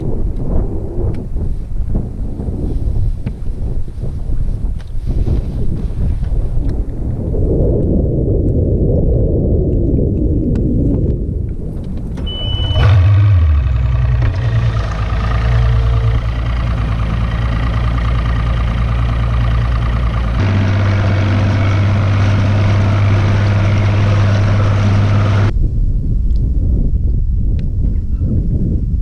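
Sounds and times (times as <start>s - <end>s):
short high beep: 12.2s - 13.0s
outboard motor running: 12.2s - 25.5s.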